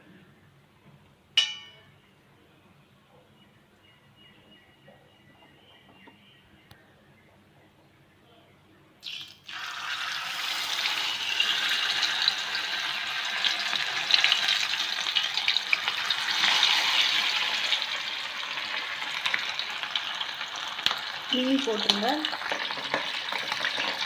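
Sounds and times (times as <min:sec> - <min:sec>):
fish sizzling in hot oil: 0:09.0 - 0:24.0.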